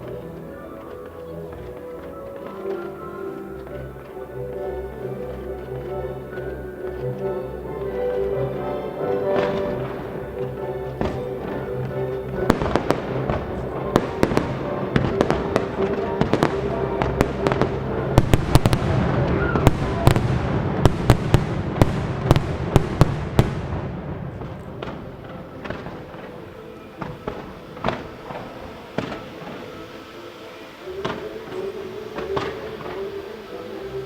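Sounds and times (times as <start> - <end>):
fireworks bangs and crackles: 0.0 - 34.0
orchestral music: 0.0 - 34.0.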